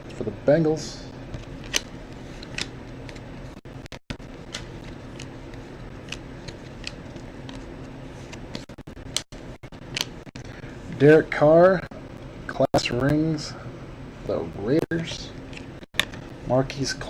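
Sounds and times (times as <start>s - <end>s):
trading cards clicking: 1.6s - 3.2s, 4.4s - 7.7s.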